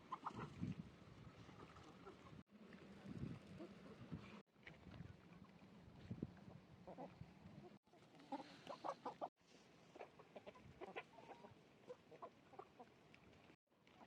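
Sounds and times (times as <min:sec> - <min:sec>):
chickens clucking: 0:00.1 - 0:00.5, 0:06.9 - 0:09.3, 0:09.9 - 0:12.9.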